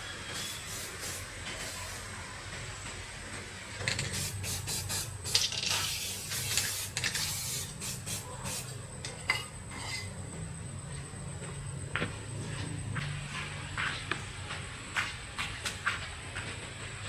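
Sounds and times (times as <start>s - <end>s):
metal parts and tools clinking: 5.3s - 7.4s.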